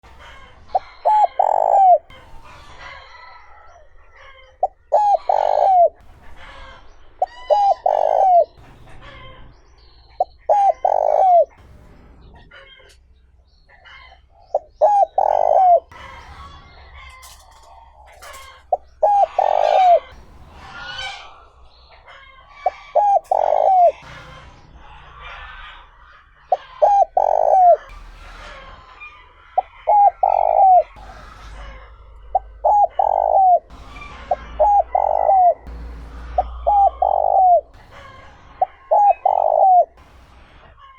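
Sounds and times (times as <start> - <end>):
spotted dove cooing: 0.7 - 2.2, 4.6 - 6.0, 7.5 - 8.5, 10.5 - 11.6, 14.5 - 16.0, 18.4 - 20.2, 22.6 - 24.0, 26.5 - 28.0, 29.6 - 33.7, 34.6 - 35.7, 36.3 - 40.0.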